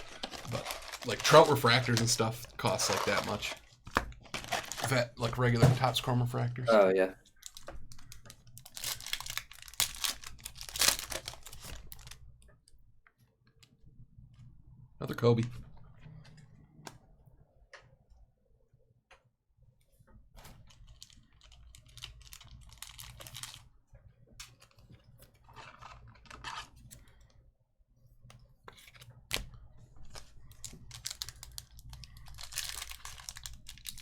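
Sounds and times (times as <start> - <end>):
cards being flipped through: 28.6 - 30.2.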